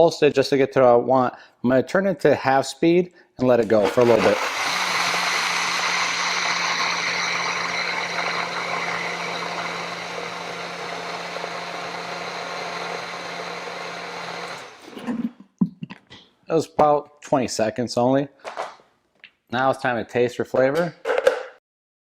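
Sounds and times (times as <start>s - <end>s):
blender whirring liquid: 3.6s - 15.1s.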